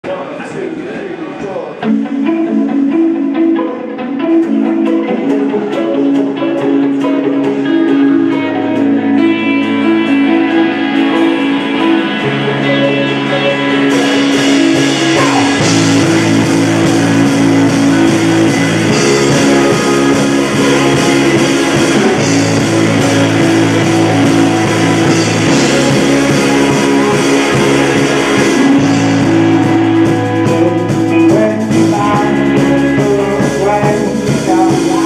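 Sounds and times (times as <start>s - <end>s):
bass notes: 0.0s - 35.0s
electric guitar figure: 0.0s - 35.0s
drums with cymbals: 8.7s - 35.0s.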